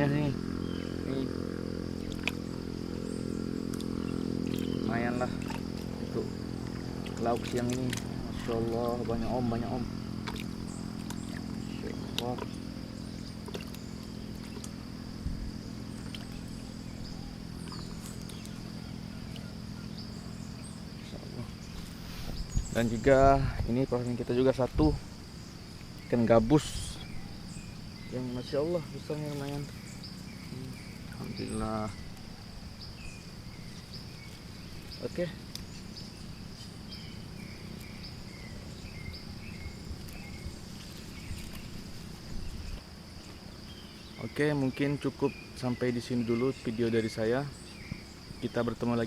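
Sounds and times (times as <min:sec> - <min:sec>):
low hum: 0:00.0 - 0:44.3
high-pitched insect drone: 0:00.0 - 0:49.0.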